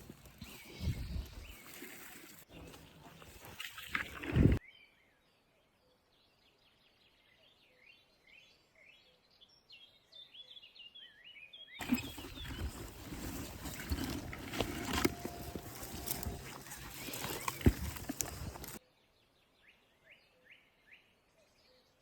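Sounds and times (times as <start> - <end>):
rustling and handling noise: 11.8 - 18.8.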